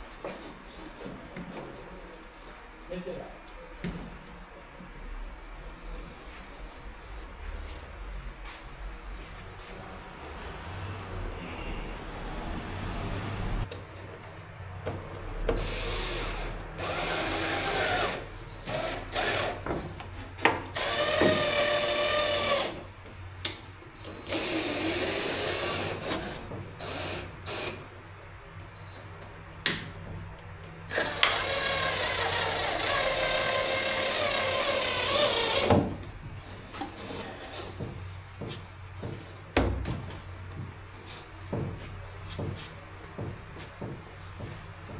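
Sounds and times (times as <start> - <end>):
power drill whining: 15.6 - 19.6, 20.7 - 22.8, 24.0 - 27.8, 30.9 - 35.8.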